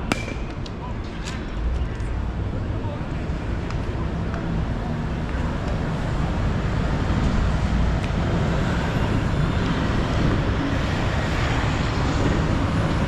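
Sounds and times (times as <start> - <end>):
outdoor background rumble: 0.0 - 13.0.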